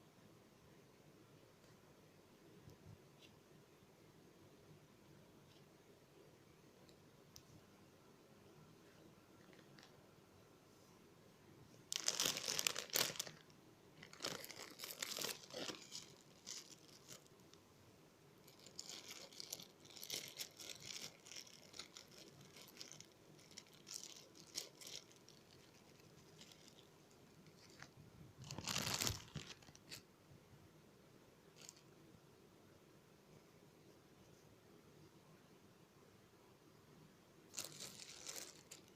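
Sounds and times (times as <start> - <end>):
crinkling rustling handling noise: 11.9 - 17.6, 18.4 - 30.0, 31.6 - 31.8, 37.5 - 38.9.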